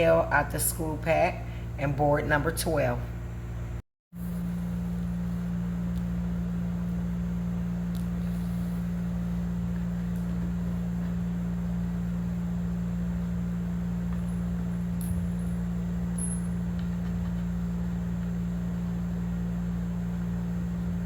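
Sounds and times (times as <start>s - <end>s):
low-pitched hum: 0.0s - 21.0s.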